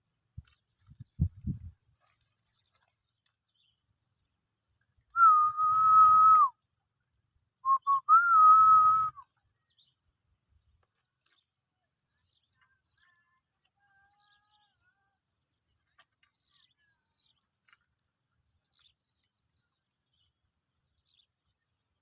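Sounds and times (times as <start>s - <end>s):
person whistling: 5.2s - 6.5s, 7.6s - 9.2s.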